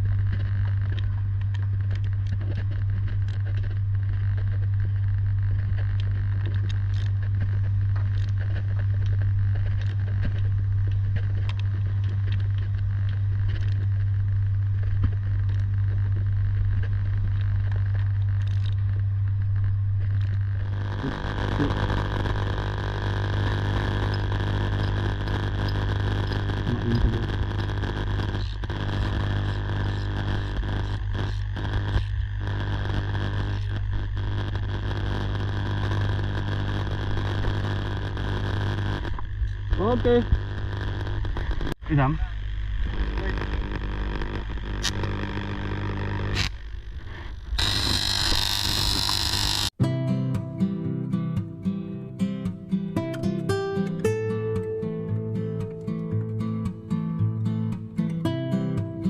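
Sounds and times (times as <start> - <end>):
electrical hum of substation equipment: 0.0 - 59.0.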